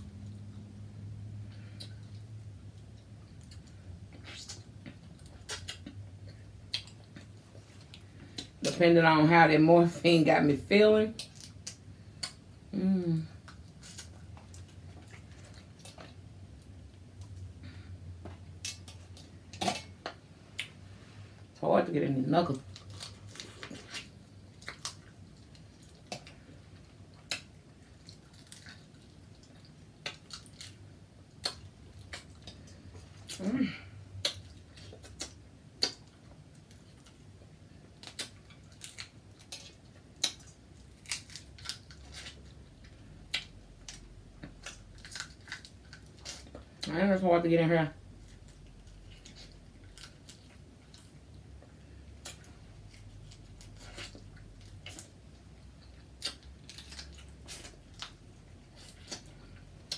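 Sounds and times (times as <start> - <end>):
low steady hum: 0.0 - 59.9
crab shells cracking: 38.0 - 42.2.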